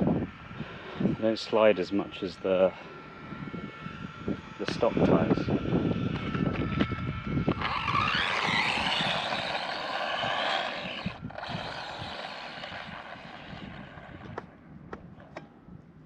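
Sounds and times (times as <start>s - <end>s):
electric motor whining: 0.0s - 14.6s.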